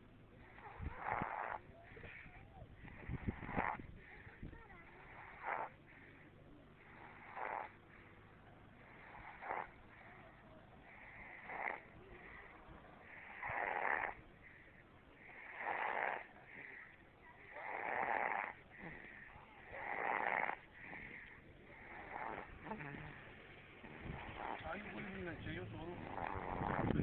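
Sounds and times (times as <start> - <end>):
person snoring: 2.9 - 5.8, 6.8 - 7.8, 8.9 - 10.2, 10.9 - 14.2, 15.2 - 23.2, 26.0 - 27.0.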